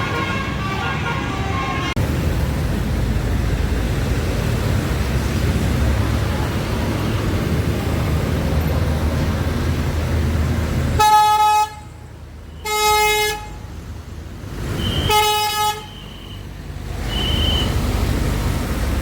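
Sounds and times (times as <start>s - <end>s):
bus multi-tone horn: 0.0s - 2.0s, 11.0s - 13.6s, 14.8s - 16.5s, 17.1s - 17.7s
heavy road traffic rumble: 0.0s - 19.0s.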